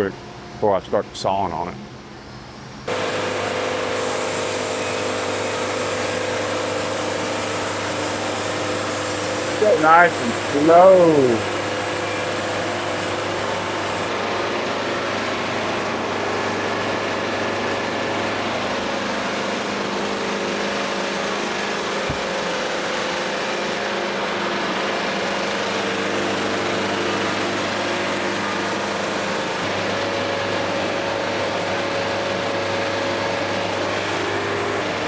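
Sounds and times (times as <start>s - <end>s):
power trimmer running: 2.9s - 3.9s, 4.5s - 28.4s
low thump: 22.1s - 22.3s.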